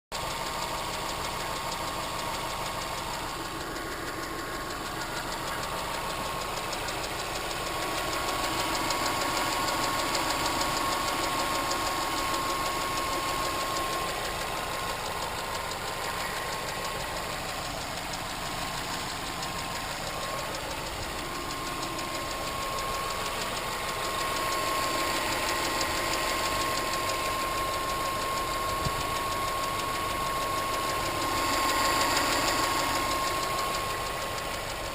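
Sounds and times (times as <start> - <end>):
car engine running: 0.1 - 34.9
fast engine ticking: 0.1 - 34.9
thin steady whine: 10.3 - 34.7.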